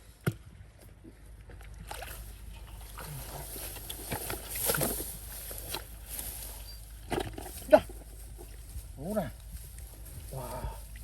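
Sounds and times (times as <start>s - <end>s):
water sloshing and splashing: 1.2s - 6.4s.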